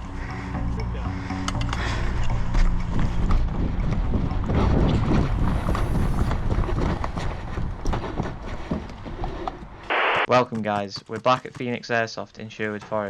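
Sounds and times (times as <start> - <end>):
wind rumble on microphone: 2.3 - 9.8.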